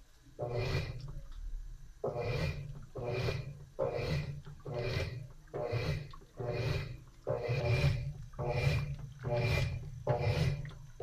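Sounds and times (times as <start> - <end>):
washing machine agitator swishing water: 2.0 - 11.0.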